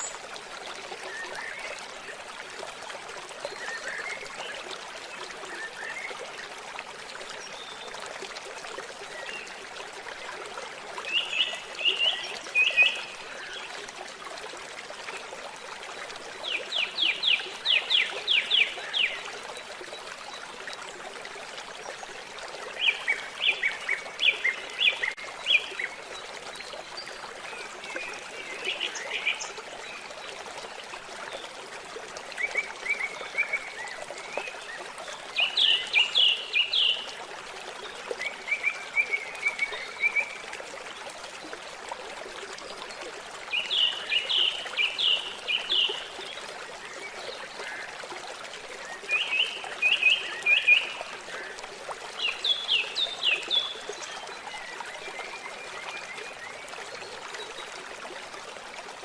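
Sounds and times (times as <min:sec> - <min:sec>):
trickle of running water: 0:00.0 - 0:59.0.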